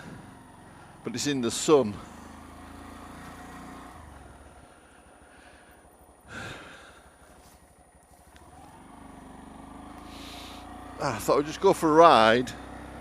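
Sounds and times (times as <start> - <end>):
small engine idling: 0.0 - 13.0.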